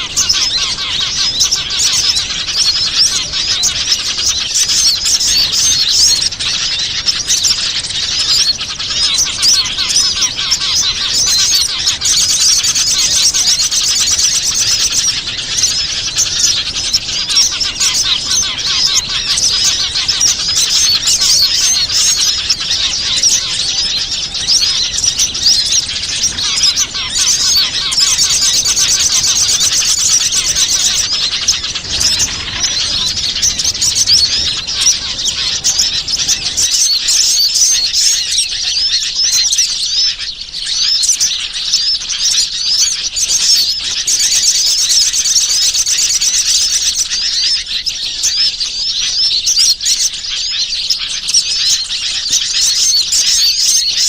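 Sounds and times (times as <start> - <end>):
songbirds chirping and twittering: 0.0 - 54.0.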